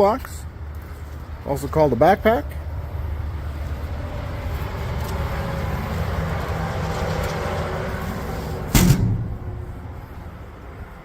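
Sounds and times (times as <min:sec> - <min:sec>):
steady low rumble: 0:00.4 - 0:11.0
loud clunk with low ring: 0:08.7 - 0:10.0.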